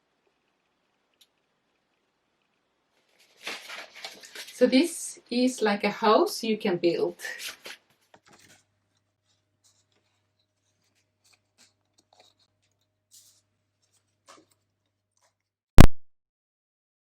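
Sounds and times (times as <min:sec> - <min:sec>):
paper packaging rustling: 0:03.0 - 0:04.9, 0:07.3 - 0:15.4.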